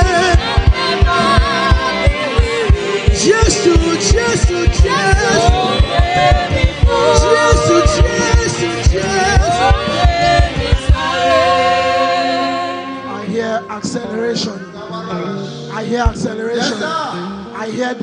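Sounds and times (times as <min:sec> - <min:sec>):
kick drum beat: 0:00.0 - 0:11.2
band playing worship music: 0:00.0 - 0:18.0
person singing: 0:00.0 - 0:18.0.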